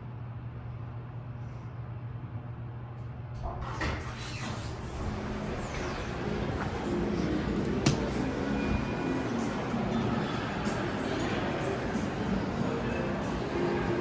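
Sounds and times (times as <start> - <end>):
elevator doors sliding open: 3.4 - 10.7
elevator hum: 3.4 - 14.0
busy background noise: 4.7 - 14.0
elevator clicks: 6.3 - 8.9.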